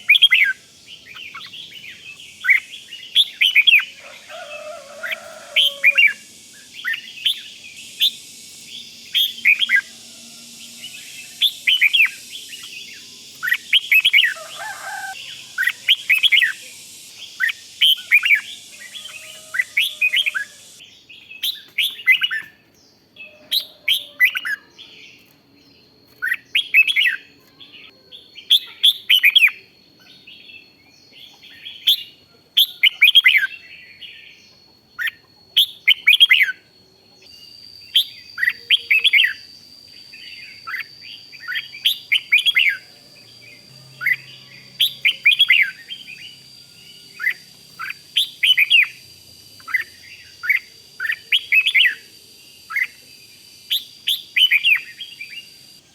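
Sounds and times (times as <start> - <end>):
bird warbling: 0.0 - 20.8.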